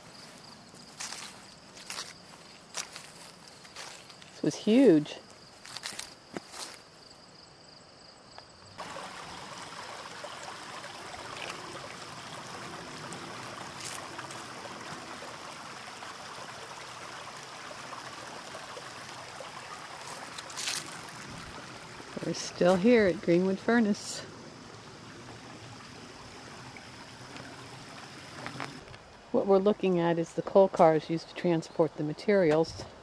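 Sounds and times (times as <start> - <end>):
stream water rushing: 8.8 - 28.9.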